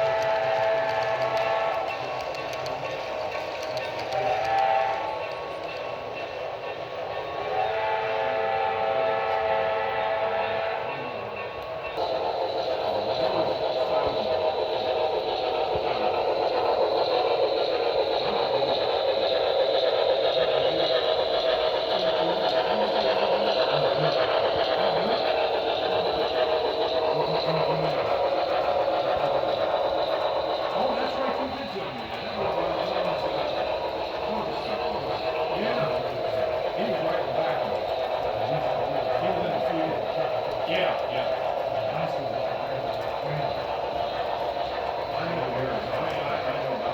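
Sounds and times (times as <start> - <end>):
steam locomotive whistle blasts: 0.0 - 2.1, 4.0 - 5.5, 7.3 - 11.4
model train whirring and rolling: 0.0 - 46.9.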